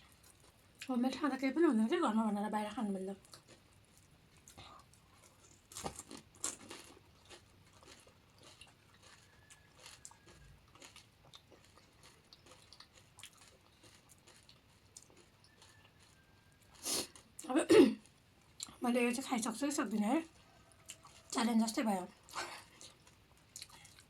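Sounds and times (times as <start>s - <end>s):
soft chewing clicks: 0.0s - 1.0s, 3.1s - 18.8s, 19.6s - 24.0s
crisp shells crunching: 5.2s - 17.3s.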